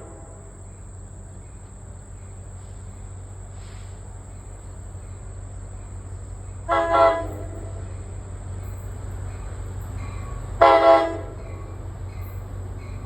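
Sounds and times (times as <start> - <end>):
locomotive horn blast: 0.0 - 0.7, 6.6 - 8.1, 10.2 - 11.8
insect trill: 0.0 - 13.0.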